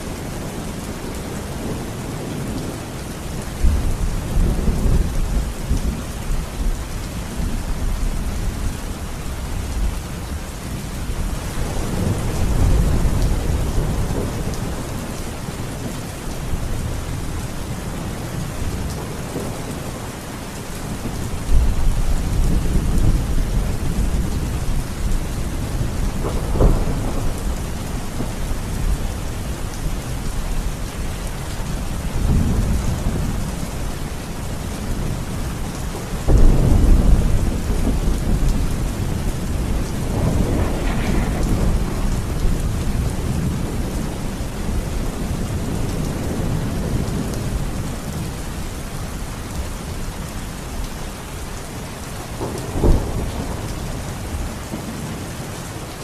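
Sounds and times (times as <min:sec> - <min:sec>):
steady rain: 0:00.0 - 0:56.0
rolling thunder: 0:11.2 - 0:15.9, 0:21.0 - 0:31.2, 0:31.8 - 0:48.3, 0:52.4 - 0:55.2
sharp thunderclap: 0:36.2 - 0:44.2.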